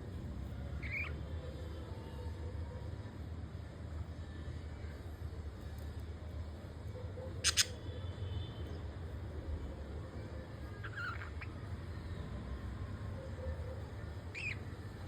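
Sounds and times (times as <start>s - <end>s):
budgerigars chirping: 0.8s - 1.1s, 7.4s - 7.8s, 10.8s - 11.6s, 14.3s - 14.7s.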